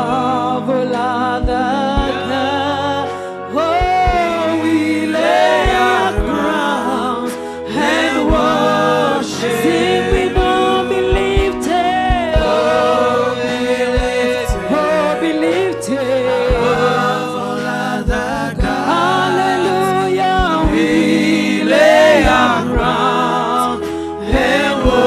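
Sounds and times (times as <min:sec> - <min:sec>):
held keyboard chords: 0:00.0 - 0:25.0
voices singing: 0:00.0 - 0:25.0
low drum thumps: 0:01.4 - 0:02.4, 0:03.8 - 0:06.6, 0:07.8 - 0:15.6, 0:18.0 - 0:18.9, 0:20.4 - 0:21.4, 0:24.3 - 0:25.0.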